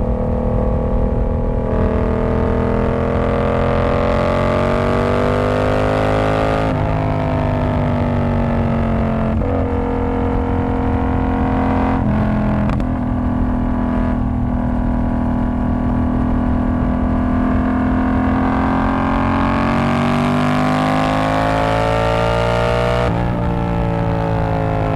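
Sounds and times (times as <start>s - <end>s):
motorcycle engine revving under load: 0.0s - 24.9s.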